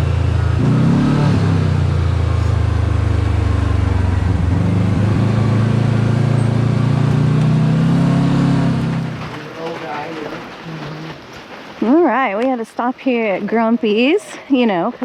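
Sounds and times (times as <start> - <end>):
vehicle engine running loud: 0.0 - 9.5.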